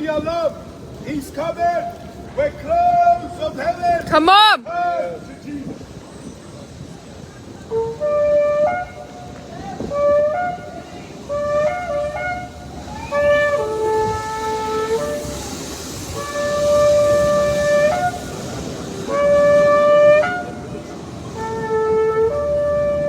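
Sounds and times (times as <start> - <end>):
ram's horn blasts: 7.7 - 23.0.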